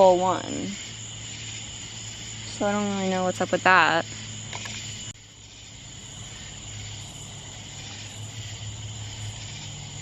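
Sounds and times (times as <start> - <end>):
night insects trilling: 0.0 - 10.0.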